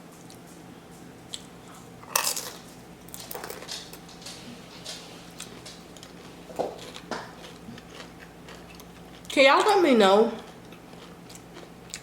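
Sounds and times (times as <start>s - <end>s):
crisp crunching of nachos: 1.4s - 4.2s, 5.4s - 9.4s, 10.5s - 12.0s.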